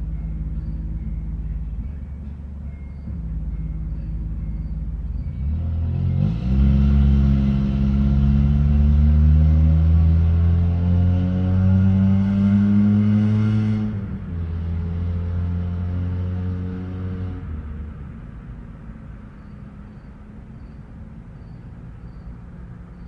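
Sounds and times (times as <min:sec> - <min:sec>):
vehicle engine accelerating: 0:00.0 - 0:23.0
crickets chirping: 0:19.3 - 0:23.0.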